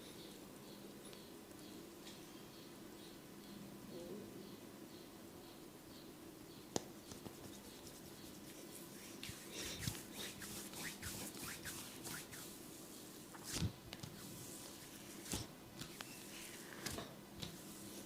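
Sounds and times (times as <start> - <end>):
scratchy rustling of hair: 7.0 - 18.0.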